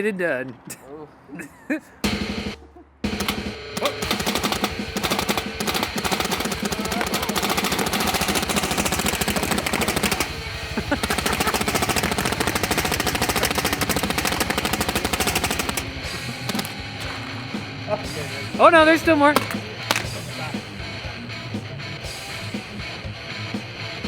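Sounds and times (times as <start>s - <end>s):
paintball gun rapid fire: 2.0s - 17.3s, 19.3s - 20.2s.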